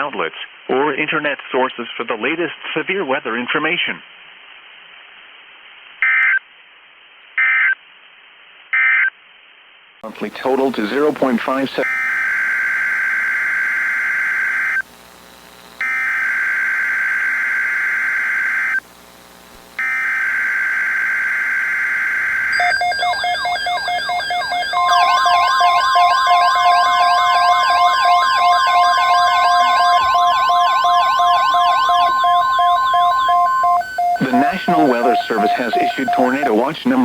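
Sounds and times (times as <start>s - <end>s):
buzzing digital data screech: 19.8s - 37.0s
siren wails: 19.8s - 37.0s
steady beeping tones: 22.5s - 37.0s.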